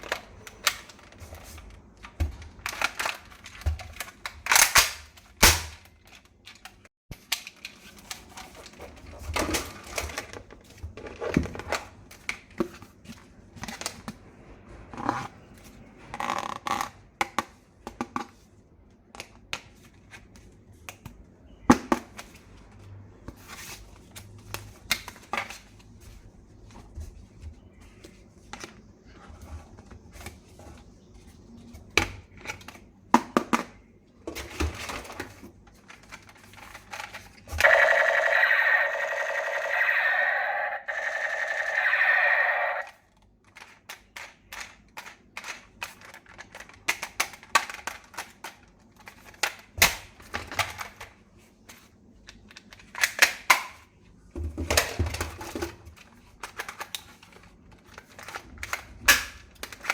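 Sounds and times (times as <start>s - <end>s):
toy gun clicking: 37.6s - 42.9s.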